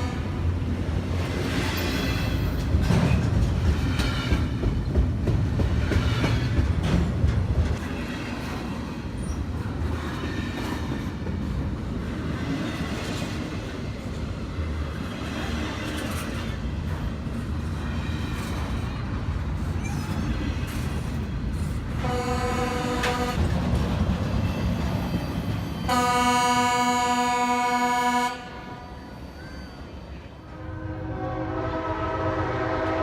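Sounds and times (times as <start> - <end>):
train rumbling past: 0.0 - 33.0
train air horn chord: 22.0 - 23.4, 25.9 - 28.8, 30.5 - 33.0.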